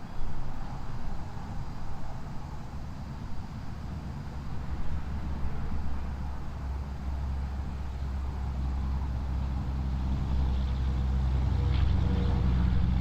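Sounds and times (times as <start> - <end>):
vehicle engine running: 3.8 - 13.0.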